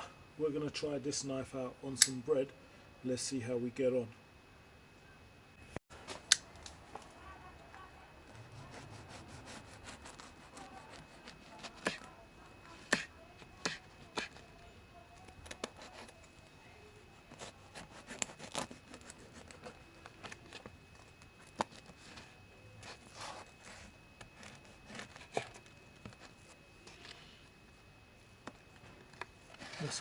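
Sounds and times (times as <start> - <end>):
knife sawing through bread: 8.4 - 12.0, 17.3 - 19.8.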